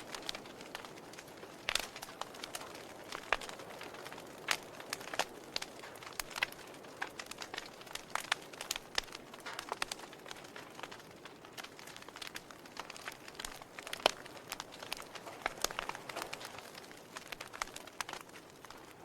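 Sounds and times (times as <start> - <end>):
wood fire crackling and popping: 0.0 - 19.0.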